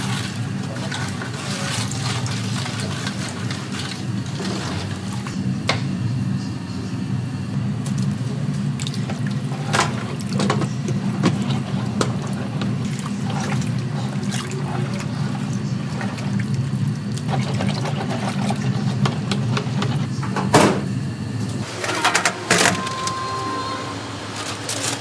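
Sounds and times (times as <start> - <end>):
low kitchen hum: 0.0 - 25.0
utensils clattering: 21.6 - 25.0.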